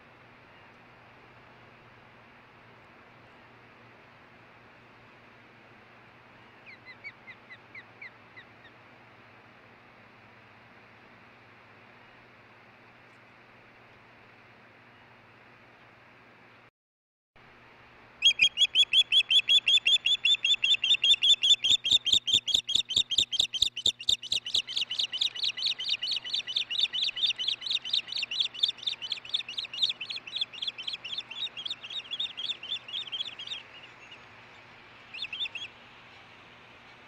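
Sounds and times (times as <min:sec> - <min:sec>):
osprey chirping calls: 0:18.2 - 0:37.0.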